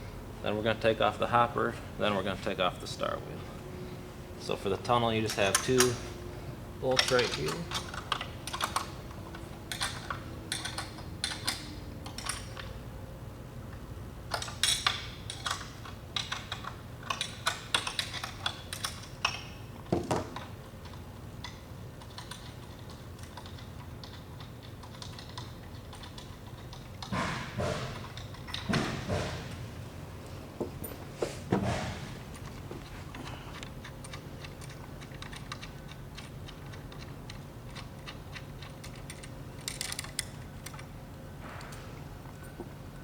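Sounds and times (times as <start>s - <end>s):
steady low hum: 0.0s - 43.0s
hand tools clicking on metal: 6.8s - 9.0s, 32.3s - 40.9s.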